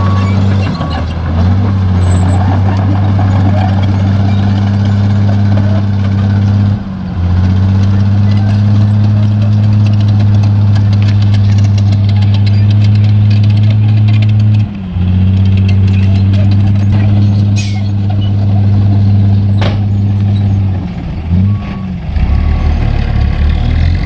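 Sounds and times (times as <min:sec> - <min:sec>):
reversing beep: 0:00.0 - 0:01.2, 0:03.4 - 0:05.8, 0:21.3 - 0:23.9
diesel truck engine droning: 0:00.0 - 0:24.0.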